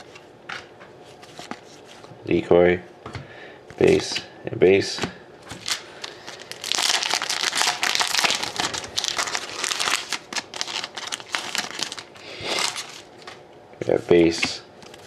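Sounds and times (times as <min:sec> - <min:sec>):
wrapper crinkling and tearing: 0:05.5 - 0:13.4.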